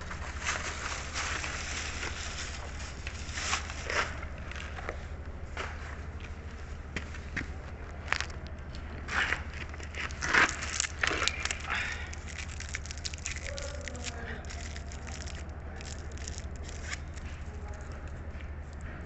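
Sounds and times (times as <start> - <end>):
steady low hum: 0.0 - 19.0
eating crackles and clicks: 9.7 - 18.8.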